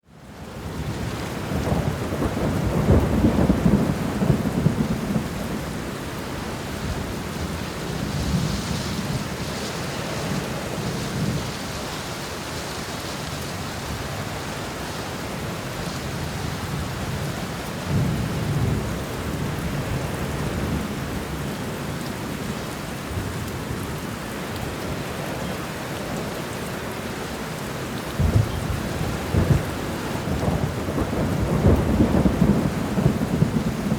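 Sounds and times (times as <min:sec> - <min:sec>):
heavy rain: 0:00.0 - 0:33.9
rolling thunder: 0:00.7 - 0:11.7, 0:28.2 - 0:33.9.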